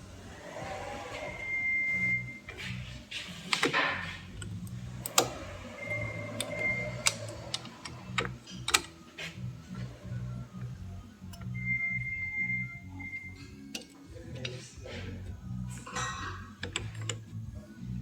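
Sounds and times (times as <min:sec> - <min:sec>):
quiet background music: 0:00.0 - 0:18.0
high steady tone: 0:01.2 - 0:02.5, 0:05.3 - 0:08.0, 0:11.3 - 0:13.6
clicks and taps of metal parts: 0:03.5 - 0:05.4, 0:06.4 - 0:09.4, 0:13.5 - 0:17.4.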